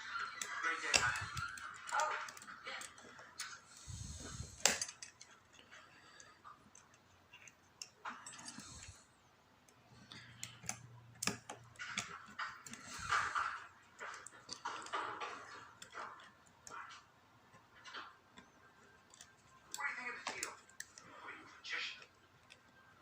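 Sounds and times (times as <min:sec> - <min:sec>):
lock picks clicking in lock: 0:04.5 - 0:05.6, 0:10.1 - 0:13.1.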